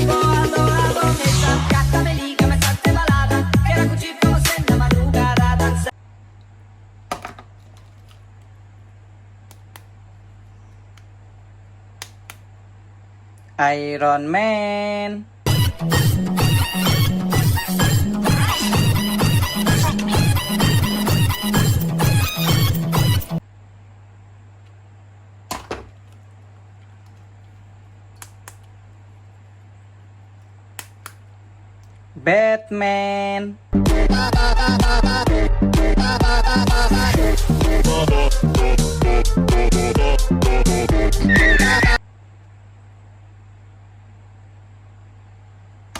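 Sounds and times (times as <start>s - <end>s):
low steady hum: 5.9s - 15.8s, 23.4s - 41.4s, 42.0s - 45.9s.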